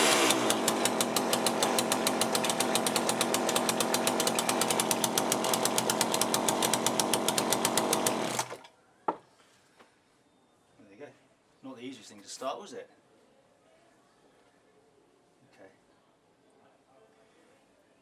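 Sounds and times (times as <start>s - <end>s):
chainsaw engine running: 0.0s - 8.6s.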